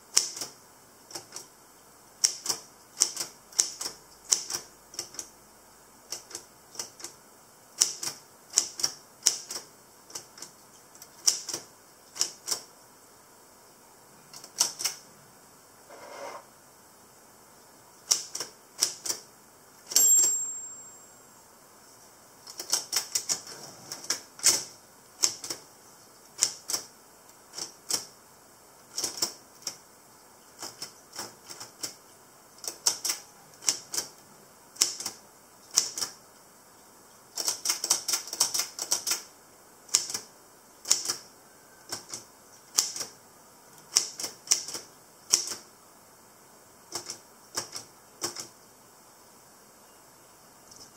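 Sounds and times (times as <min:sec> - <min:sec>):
typewriter bell ding: 0:19.9 - 0:21.4
typewriter keys clacking: 0:22.5 - 0:23.4, 0:37.4 - 0:39.2.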